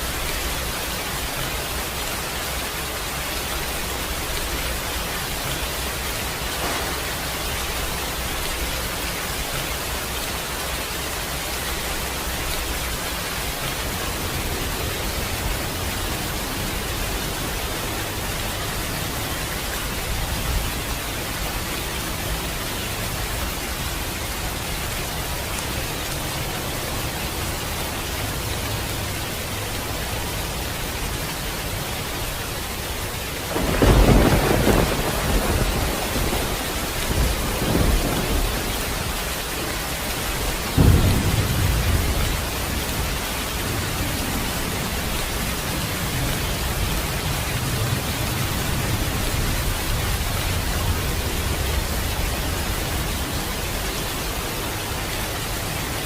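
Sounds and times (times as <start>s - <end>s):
steady rain falling: 0.0s - 56.0s
deep thunder rumble: 5.6s - 8.7s, 33.5s - 39.3s, 40.4s - 53.0s.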